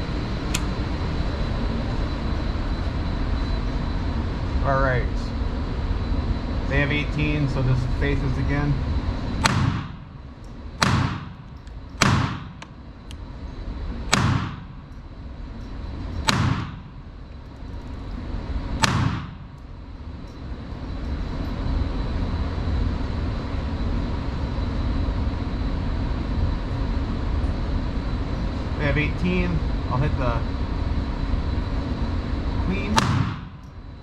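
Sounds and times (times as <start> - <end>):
steady background hum: 0.0 - 34.0
pistol shots: 9.4 - 10.2, 10.8 - 12.8, 14.1 - 14.9, 16.3 - 17.1, 18.8 - 19.6, 32.9 - 33.7.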